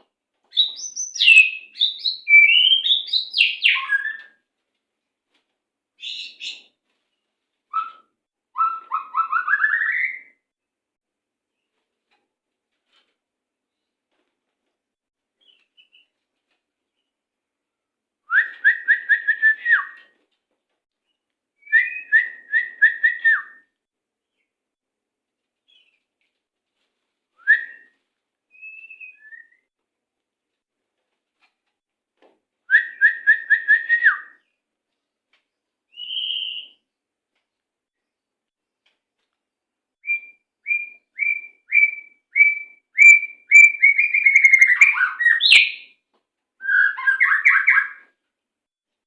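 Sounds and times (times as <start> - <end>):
songbird rapid whistled notes: 0.6 - 4.2, 40.0 - 45.8.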